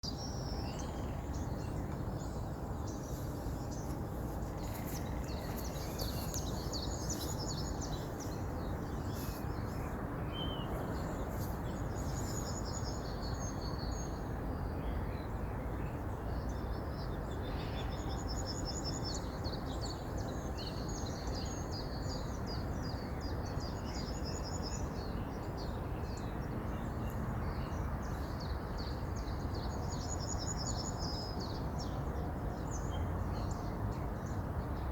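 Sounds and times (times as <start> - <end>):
small birds chirping: 0.0 - 14.2.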